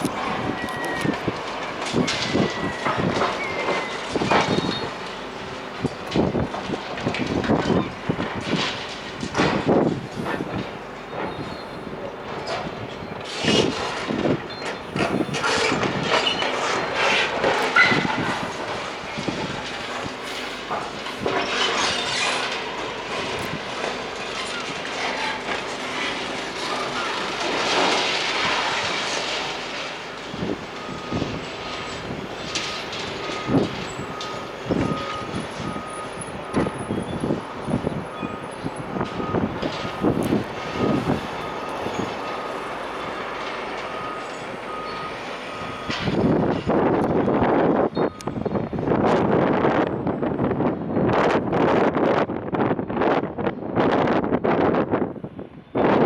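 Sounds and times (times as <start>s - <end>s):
concrete breaking and rubble falling: 0.0s - 5.2s, 13.2s - 45.0s
metal screeching and grinding: 13.4s - 30.1s, 30.7s - 46.5s.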